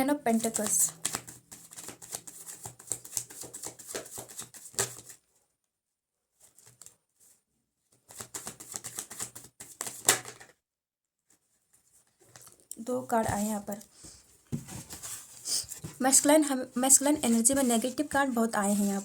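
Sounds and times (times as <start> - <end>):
cards being shuffled: 0.4 - 5.2, 8.0 - 10.5, 17.0 - 19.0.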